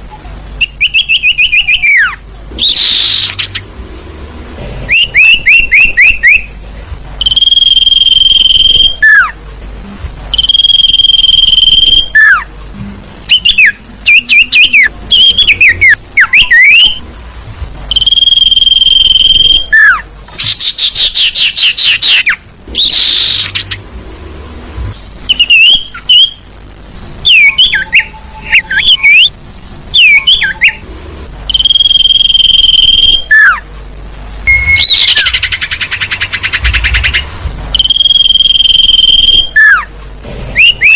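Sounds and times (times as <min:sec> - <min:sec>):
bird calls whistles and trills: 0:00.6 - 0:03.6, 0:04.9 - 0:06.6, 0:07.2 - 0:09.4, 0:10.4 - 0:12.5, 0:13.3 - 0:17.0, 0:17.9 - 0:23.8, 0:25.0 - 0:26.4, 0:27.2 - 0:29.3, 0:29.9 - 0:30.8, 0:31.5 - 0:33.6, 0:34.4 - 0:39.9, 0:40.6 - 0:40.9.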